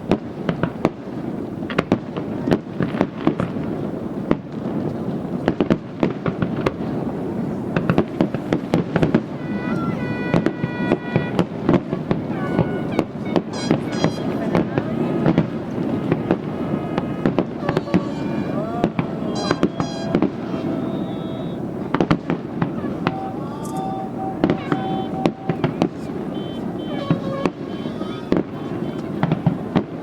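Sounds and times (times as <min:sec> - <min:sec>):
fireworks cracking and banging: 0:00.0 - 0:30.0
held tones: 0:17.6 - 0:29.4.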